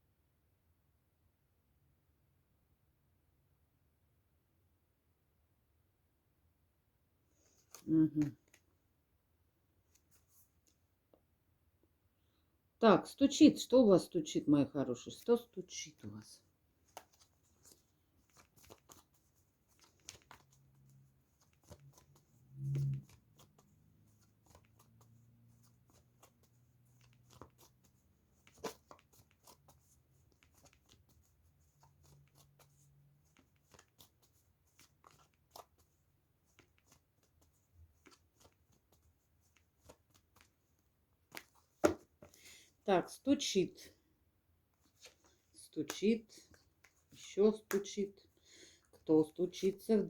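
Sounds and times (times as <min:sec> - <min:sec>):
cards shuffled and laid out: 0:07.4 - 0:08.7, 0:16.8 - 0:42.5, 0:44.8 - 0:48.0.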